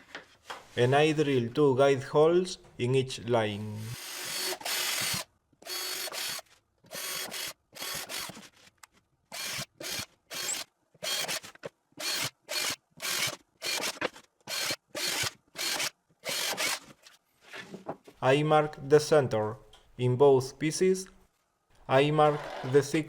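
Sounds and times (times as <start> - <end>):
drill boring through plywood: 4.0 - 8.4, 9.3 - 16.8.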